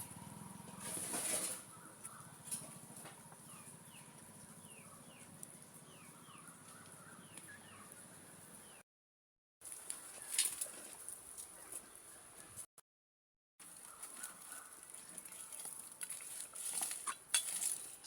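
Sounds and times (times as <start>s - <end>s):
rustle or flutter: 0.0s - 1.8s.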